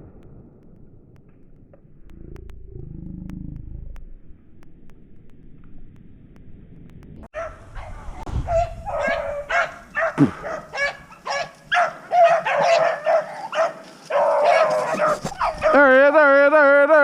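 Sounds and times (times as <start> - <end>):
dogs barking and yipping: 7.4 - 15.8.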